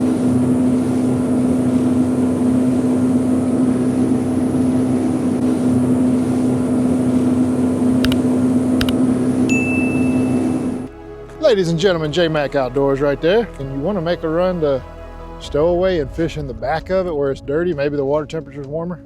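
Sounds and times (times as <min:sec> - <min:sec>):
boat motor running: 0:00.0 - 0:11.1.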